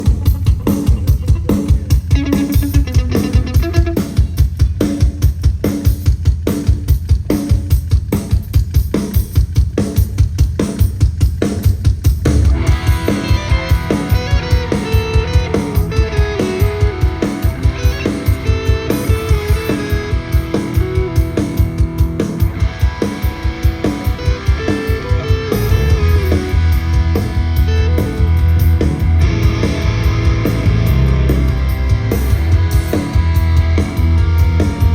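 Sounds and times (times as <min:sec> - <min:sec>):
electric guitar: 0:00.0 - 0:05.2, 0:12.2 - 0:34.9
rock band playing: 0:00.0 - 0:34.9
steady drum beat: 0:00.0 - 0:34.9.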